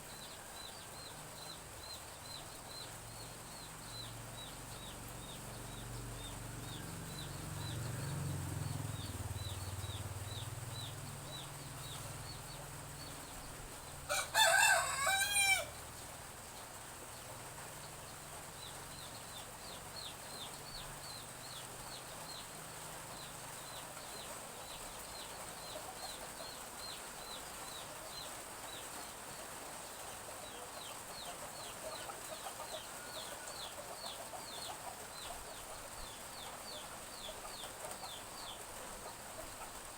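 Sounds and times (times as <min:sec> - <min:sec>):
chicks cheeping: 0:00.2 - 0:15.8, 0:17.7 - 0:39.9
rooster crowing: 0:14.0 - 0:15.8, 0:32.7 - 0:34.1.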